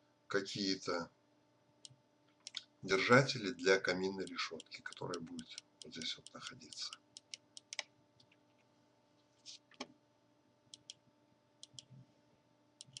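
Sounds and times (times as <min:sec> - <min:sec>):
faint clicks and ticks: 0:01.8 - 0:02.8, 0:04.2 - 0:08.7, 0:10.7 - 0:11.0, 0:11.6 - 0:12.0, 0:12.8 - 0:13.0.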